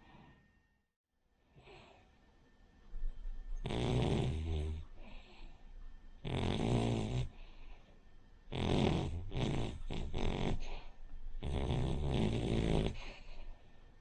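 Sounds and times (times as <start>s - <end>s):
soft dog breaths: 2.9s - 14.0s
dog snoring: 3.5s - 5.6s, 6.2s - 7.8s, 8.5s - 13.6s
dog snorting: 3.6s - 5.4s, 6.2s - 7.7s, 8.5s - 13.5s.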